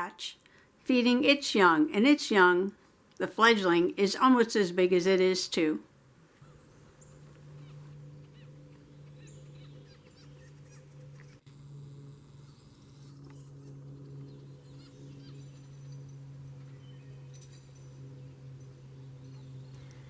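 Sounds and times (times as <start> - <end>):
steady low hum: 0.0 - 20.0
small birds chirping: 6.4 - 11.5, 12.3 - 20.0.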